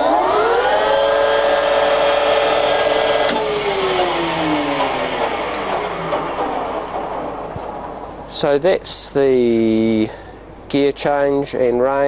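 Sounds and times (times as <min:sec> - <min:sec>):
lathe whining: 0:00.0 - 0:08.6.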